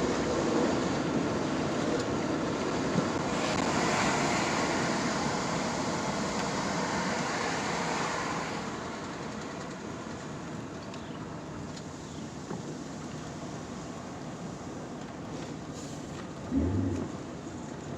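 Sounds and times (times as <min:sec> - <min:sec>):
car passing by: 0:16.5 - 0:17.3.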